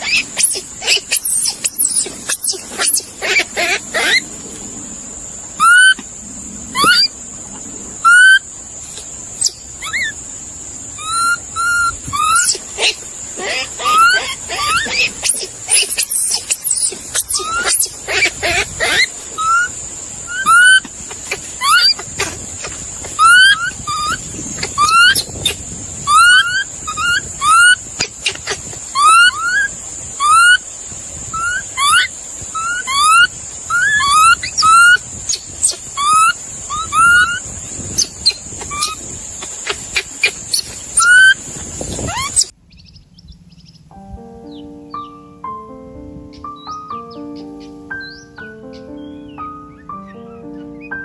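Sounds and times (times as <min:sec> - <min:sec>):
animal squeaky calls: 0:00.0 - 0:04.3, 0:05.6 - 0:06.0, 0:06.8 - 0:07.1, 0:08.0 - 0:08.4, 0:09.4 - 0:10.2, 0:11.0 - 0:30.6, 0:31.3 - 0:42.5
steady high hiss: 0:00.0 - 0:51.0.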